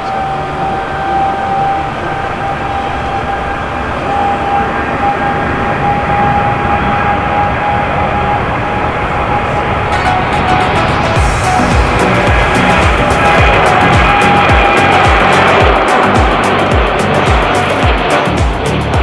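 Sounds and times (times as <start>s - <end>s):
jet engines running: 0.0s - 19.0s.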